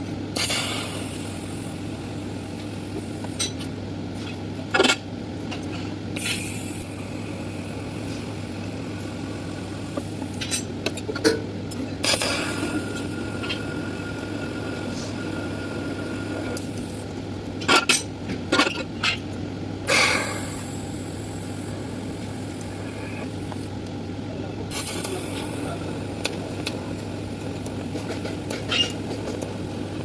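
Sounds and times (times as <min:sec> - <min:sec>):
welding set humming: 0:00.0 - 0:30.0
welding arc hissing: 0:06.2 - 0:10.4, 0:12.0 - 0:17.1, 0:19.9 - 0:23.7, 0:24.7 - 0:27.9.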